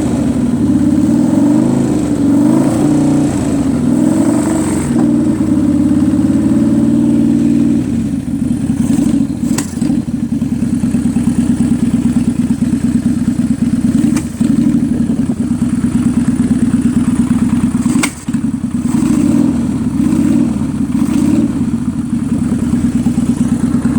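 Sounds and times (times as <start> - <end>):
engine backfire pops: 0.0 - 5.6, 8.8 - 10.1, 13.9 - 15.4, 17.0 - 21.5
motorcycle engine idling: 0.0 - 23.9.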